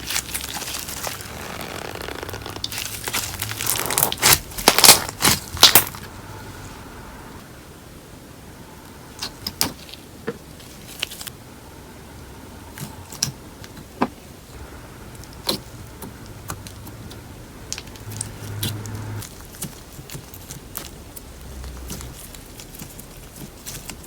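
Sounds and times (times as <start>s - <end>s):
slime squishing by hand: 0.0s - 7.3s, 14.6s - 24.0s.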